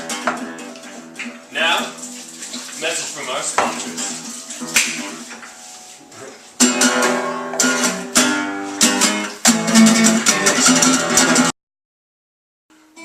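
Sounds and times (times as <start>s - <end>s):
acoustic guitar strumming: 0.0s - 11.6s, 12.8s - 13.0s.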